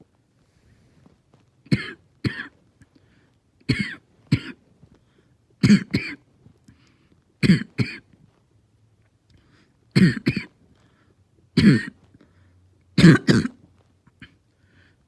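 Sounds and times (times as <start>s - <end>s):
person barking cough: 1.7s - 2.5s, 3.7s - 4.6s, 5.6s - 6.2s, 7.4s - 8.0s, 10.0s - 10.5s, 11.6s - 12.0s, 13.0s - 13.6s.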